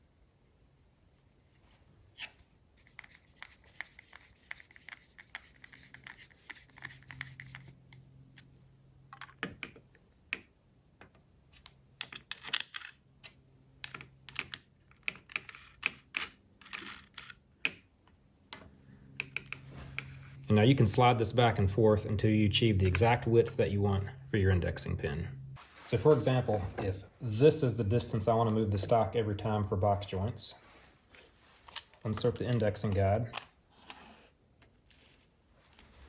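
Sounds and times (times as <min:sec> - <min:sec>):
small hardware clicks and scrapes: 0:31.1 - 0:35.2.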